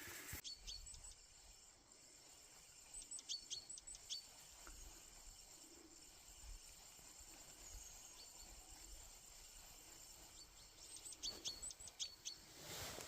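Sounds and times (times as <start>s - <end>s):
faint high bird chirps: 0.4s - 5.6s, 7.3s - 12.5s.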